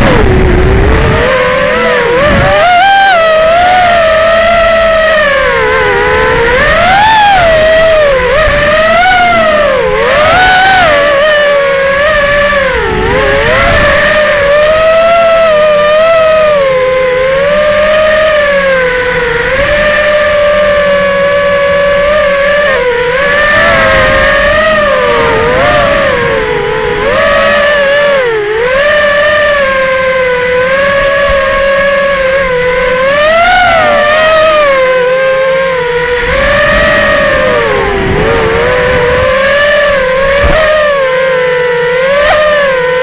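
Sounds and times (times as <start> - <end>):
quadcopter motors whining: 0.0 - 43.0.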